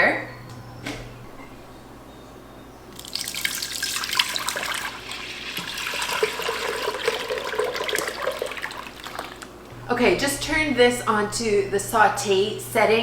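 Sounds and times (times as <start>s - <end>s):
milk pouring into a pot: 3.0s - 9.6s.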